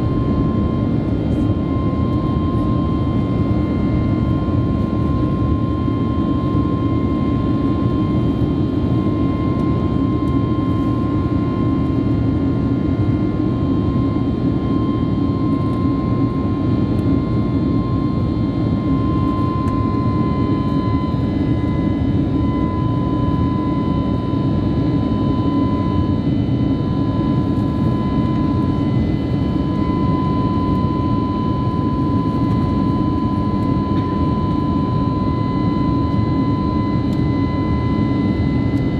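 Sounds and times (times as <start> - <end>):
jet engines and airflow roaring: 0.0 - 38.9
high whine: 14.6 - 38.9.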